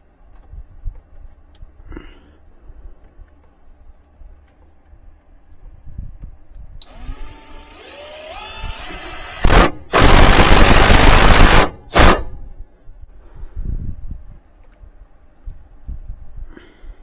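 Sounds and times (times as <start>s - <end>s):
power driver motor whine: 6.8s - 12.3s.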